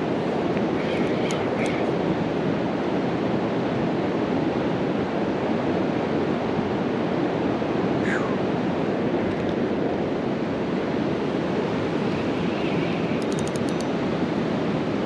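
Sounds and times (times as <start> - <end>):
river water flowing: 6.3 - 15.0.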